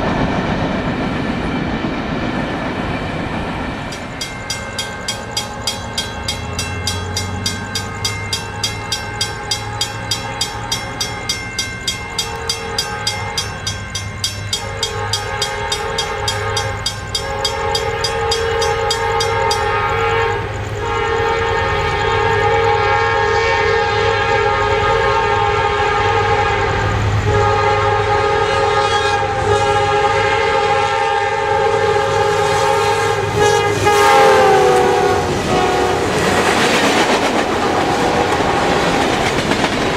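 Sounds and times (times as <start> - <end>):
crossing bell ringing: 3.6 - 30.4, 32.0 - 39.9
locomotive air horn blasts: 12.1 - 13.6, 14.4 - 37.1.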